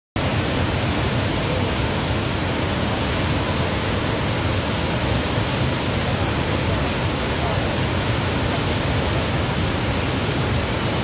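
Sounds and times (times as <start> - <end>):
waterfall rushing: 0.2 - 11.0.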